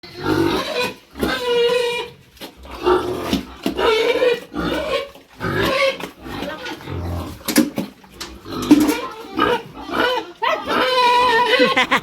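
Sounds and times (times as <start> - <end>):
pigs squealing: 0.0 - 7.5, 8.1 - 12.0.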